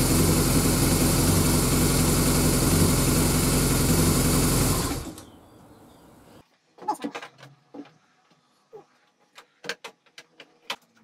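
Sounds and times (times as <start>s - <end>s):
motorcycle engine idling: 0.0s - 5.3s.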